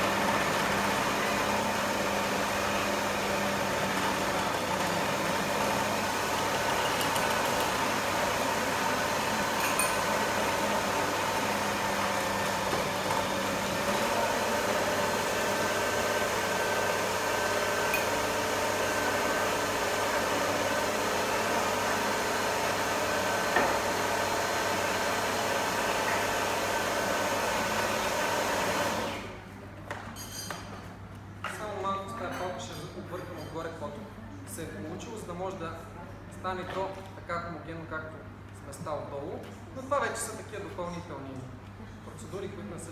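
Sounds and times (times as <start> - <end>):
food processor motor running: 0.0 - 29.4.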